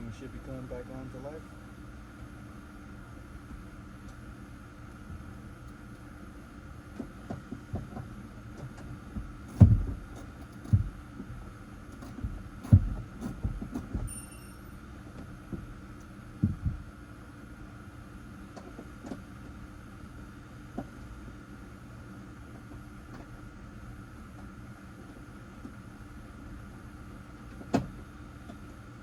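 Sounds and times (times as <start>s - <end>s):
faint steady hum: 0.0s - 29.0s
brief high tone: 14.1s - 14.7s
dull thumps and knocks: 16.4s - 16.8s.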